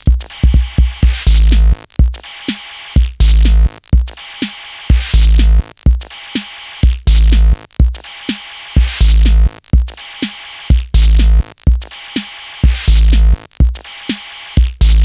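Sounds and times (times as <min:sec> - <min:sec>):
electronic dance music: 0:00.0 - 0:01.6.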